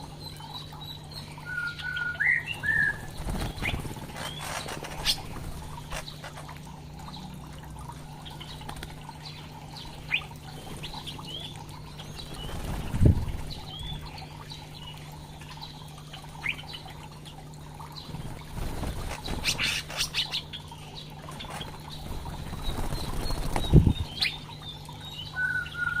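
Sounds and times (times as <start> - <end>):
songbirds chirping: 0.0 - 26.0
wings fluttering: 2.6 - 6.8, 8.3 - 9.2, 12.0 - 14.0, 18.0 - 20.5, 21.2 - 24.5.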